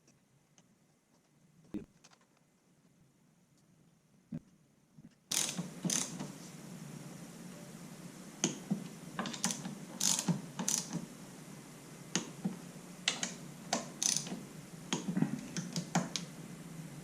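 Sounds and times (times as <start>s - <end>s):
ratchet wrench clicking: 5.3s - 6.2s, 9.4s - 11.0s, 13.1s - 14.4s.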